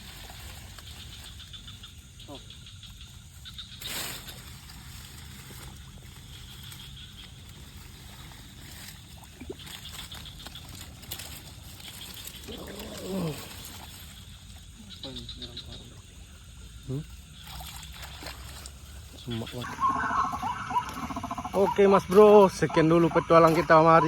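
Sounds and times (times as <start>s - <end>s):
night insects chirping: 0.0s - 24.0s
rustle: 0.0s - 24.0s
person speaking: 21.4s - 24.0s.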